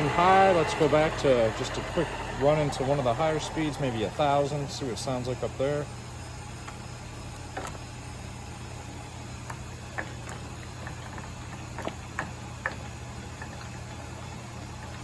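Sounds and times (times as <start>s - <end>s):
lathe humming: 0.0s - 7.5s.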